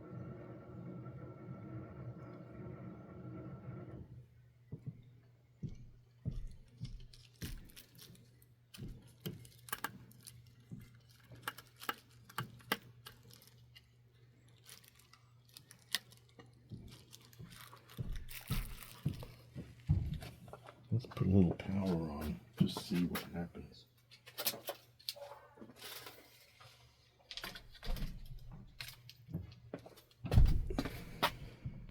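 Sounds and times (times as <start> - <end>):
low electrical hum: 0.0 - 31.9
small metal parts clicking: 8.7 - 13.9.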